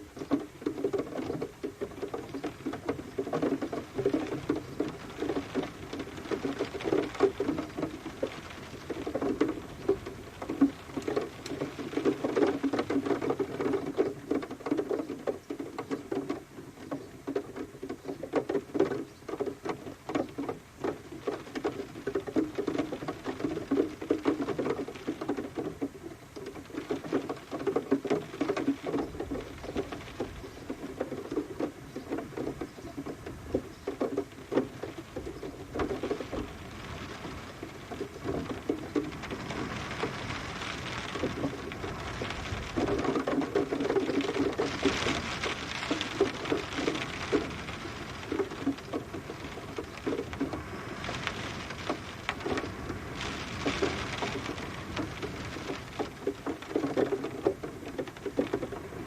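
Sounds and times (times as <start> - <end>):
rain pattering on hard surface: 0.0 - 59.0.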